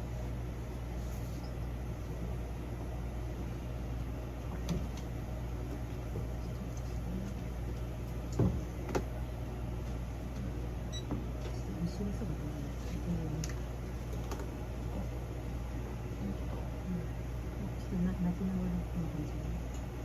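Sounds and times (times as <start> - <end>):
steady low hum: 0.0 - 20.0.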